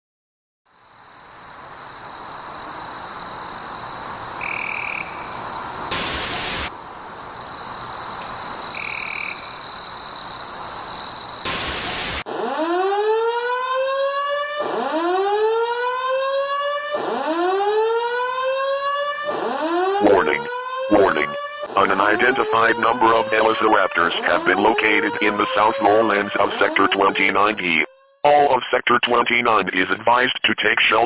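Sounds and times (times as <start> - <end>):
bursts of noise: 3.1 - 12.3, 20.0 - 27.7
static hiss: 4.0 - 12.2
high whine: 4.4 - 6.7, 20.0 - 23.0
whooping alert siren: 8.7 - 9.5, 12.3 - 28.0.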